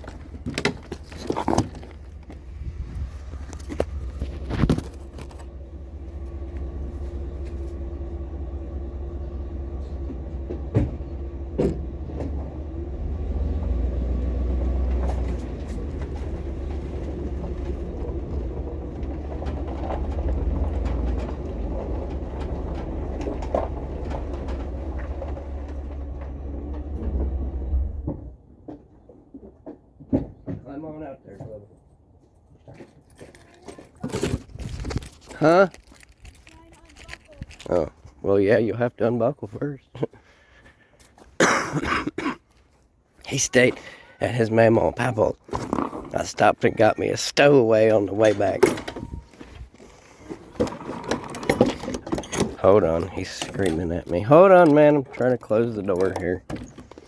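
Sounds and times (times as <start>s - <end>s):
engine and road rumble: 0.0s - 57.0s
sharp clicks and knocks: 50.3s - 57.0s.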